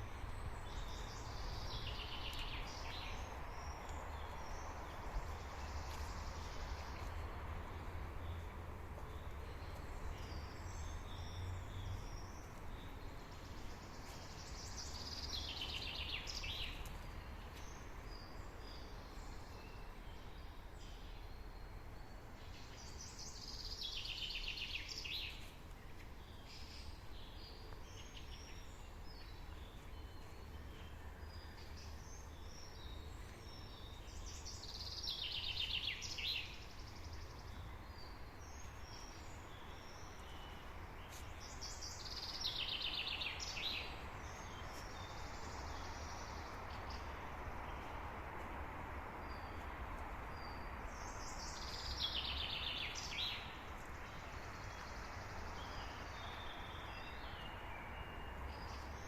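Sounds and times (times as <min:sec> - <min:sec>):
songbird singing: 0:00.0 - 0:59.0
birds chirping: 0:22.2 - 0:48.0.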